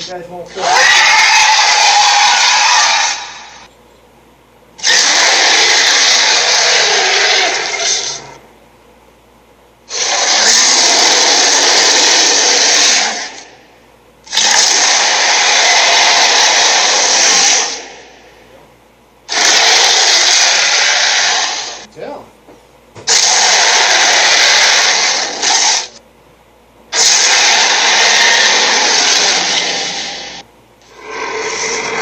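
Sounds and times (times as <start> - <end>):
dinosaur roaring: 0.5 - 3.7, 4.8 - 8.4, 9.9 - 13.5, 14.3 - 18.1, 19.3 - 21.9, 23.1 - 26.0, 26.9 - 32.0.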